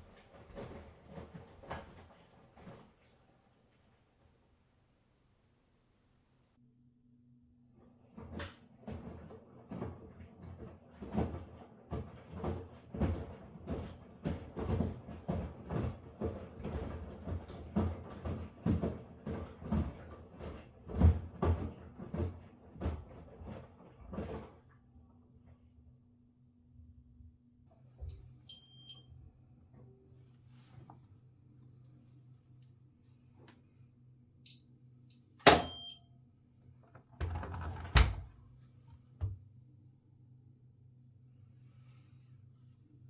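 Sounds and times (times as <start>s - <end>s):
washing machine motor hum: 27.9s - 32.5s.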